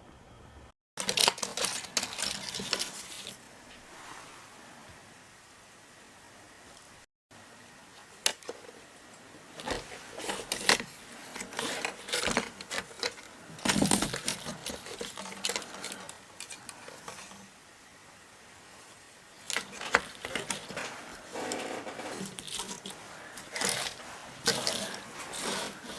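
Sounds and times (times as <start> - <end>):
small hard objects clicking and rustling: 1.0 - 3.4, 9.6 - 17.3, 19.4 - 25.9.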